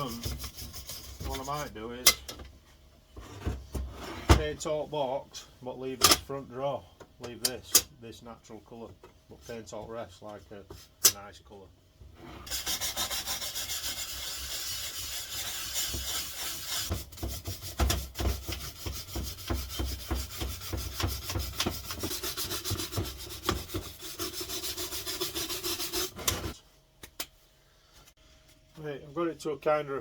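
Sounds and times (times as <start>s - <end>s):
wire brush scrubbing metal: 12.5s - 26.6s.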